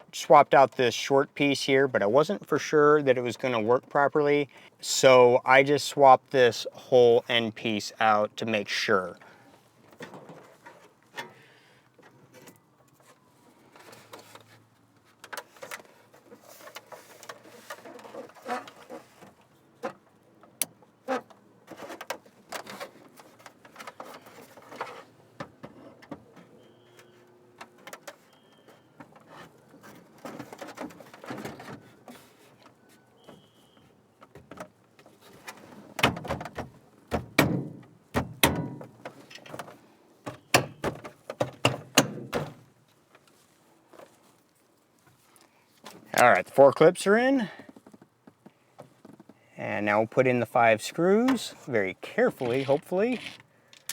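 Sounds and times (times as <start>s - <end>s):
faint plastic squeaks: 15.4s - 19.9s, 21.0s - 34.4s.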